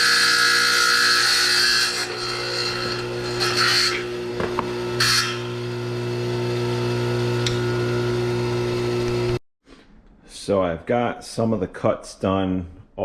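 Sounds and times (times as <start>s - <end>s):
saw blade grinding tile: 0.0s - 5.6s
tile saw motor humming: 0.0s - 9.4s.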